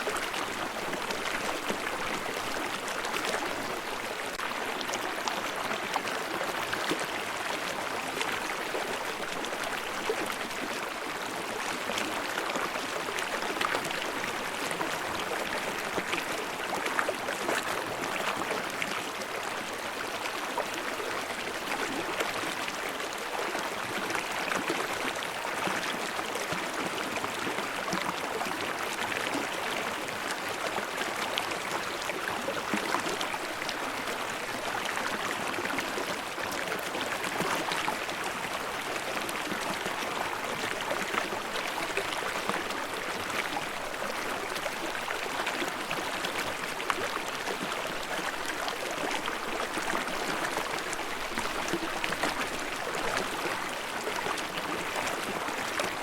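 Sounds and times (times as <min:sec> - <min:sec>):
stream running over rocks: 0:00.0 - 0:56.0.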